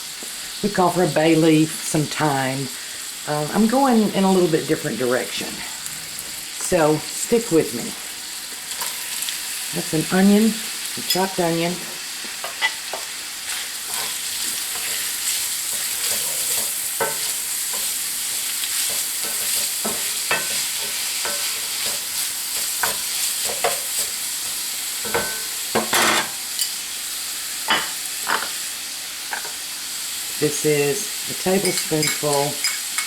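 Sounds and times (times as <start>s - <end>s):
food sizzling in a skillet: 0.0s - 33.0s
utensil scraping a pan: 12.4s - 24.2s.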